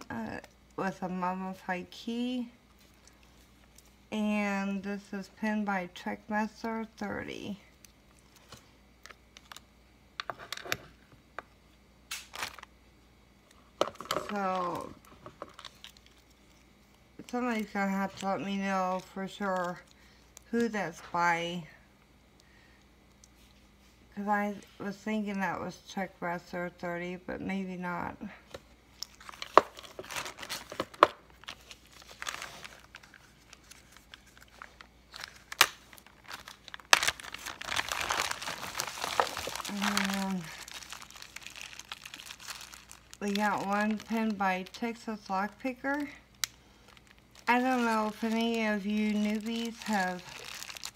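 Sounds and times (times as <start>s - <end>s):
packaging crinkling: 7.8s - 9.7s, 12.1s - 12.7s, 13.8s - 20.0s, 28.9s - 50.9s.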